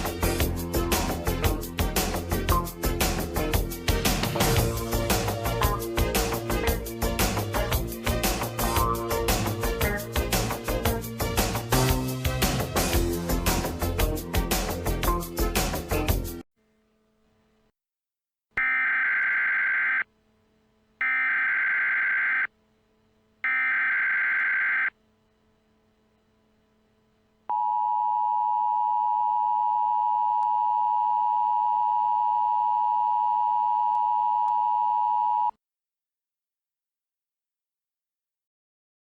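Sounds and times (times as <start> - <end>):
digital data bursts: 18.6 - 20.0, 21.0 - 22.5, 23.5 - 24.9
two-tone attention signal: 18.6 - 20.0, 21.0 - 22.5, 23.5 - 24.9.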